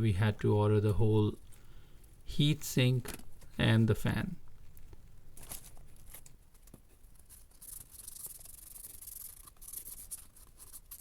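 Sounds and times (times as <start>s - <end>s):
laptop parts rubbing and scraping: 5.4s - 11.0s.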